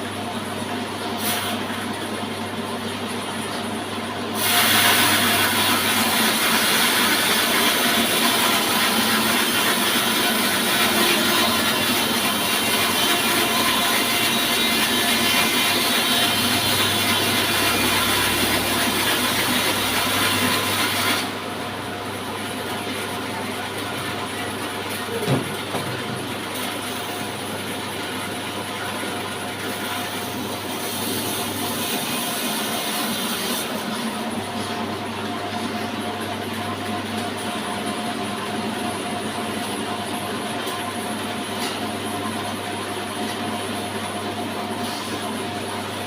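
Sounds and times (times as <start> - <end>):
saw blade cutting wood: 4.4 - 21.4, 29.6 - 34.1
sawmill motor hum: 4.4 - 36.8.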